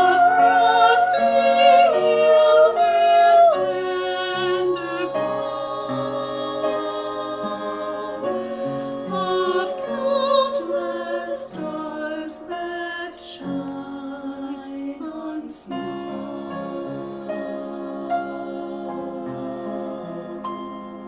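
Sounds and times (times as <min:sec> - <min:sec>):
voices singing in harmony: 0:00.0 - 0:21.0.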